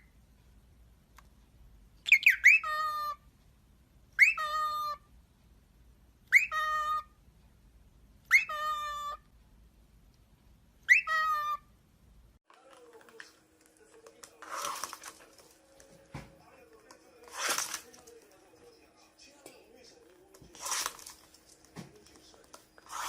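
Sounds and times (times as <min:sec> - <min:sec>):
parrot whistled chirps: 0:02.1 - 0:03.2, 0:04.2 - 0:05.0, 0:06.3 - 0:07.1, 0:08.3 - 0:09.2, 0:10.8 - 0:11.6.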